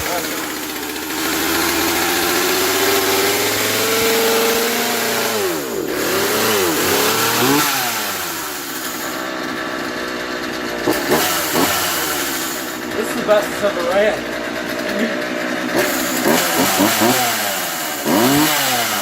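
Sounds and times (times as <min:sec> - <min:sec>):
chainsaw revving: 0:00.0 - 0:19.0.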